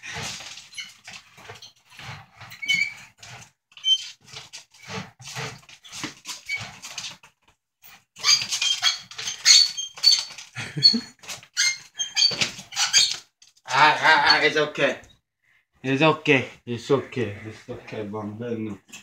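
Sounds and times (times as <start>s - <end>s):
workout machine squeaking: 0.0s - 7.2s, 7.8s - 14.7s.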